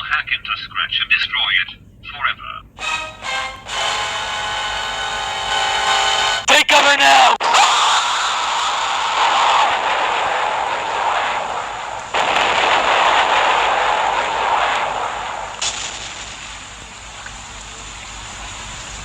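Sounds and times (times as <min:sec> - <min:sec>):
earthquake rushing and crashing: 0:07.4 - 0:17.2.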